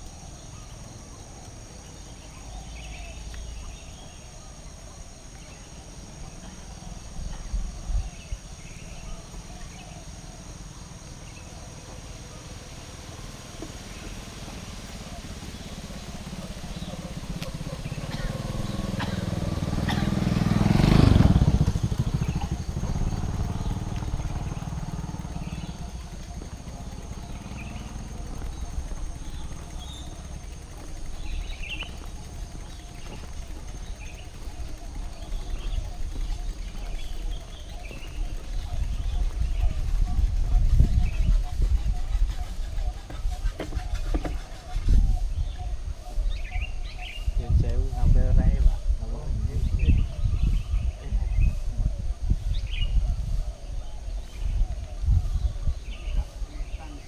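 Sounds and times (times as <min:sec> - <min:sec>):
high insect drone: 0:00.0 - 0:57.0
vehicle driving past: 0:12.0 - 0:37.4.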